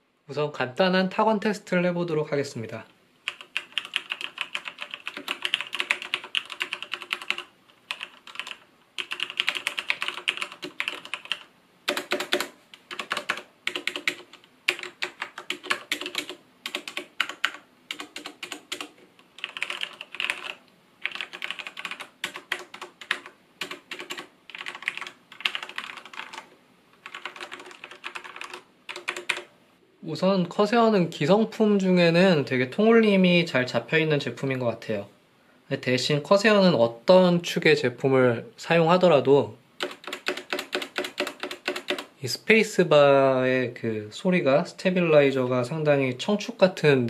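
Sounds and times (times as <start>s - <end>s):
mechanical keyboard typing: 3.3s - 29.5s, 39.8s - 42.1s.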